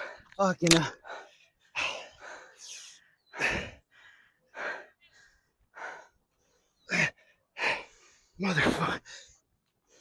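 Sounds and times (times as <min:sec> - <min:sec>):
man gasping for breath: 0:01.0 - 0:06.2.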